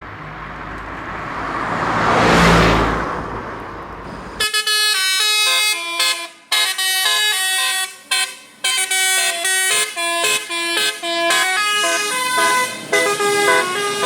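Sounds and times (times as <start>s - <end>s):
bus passing: 0.0s - 14.0s
multi-tone bus horn melody: 4.4s - 14.0s.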